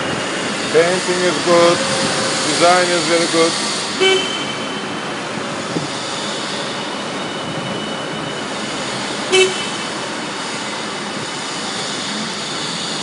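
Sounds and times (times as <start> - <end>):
factory noise: 0.0 - 13.0
vehicle horn beep: 4.0 - 4.9, 9.3 - 9.8.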